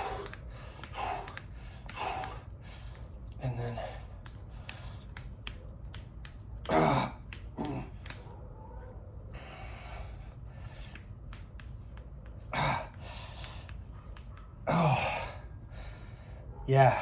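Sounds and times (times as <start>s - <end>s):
grip trainer clicking: 0.0s - 8.4s, 9.3s - 16.2s
man grunting: 6.7s - 8.0s, 14.7s - 15.4s.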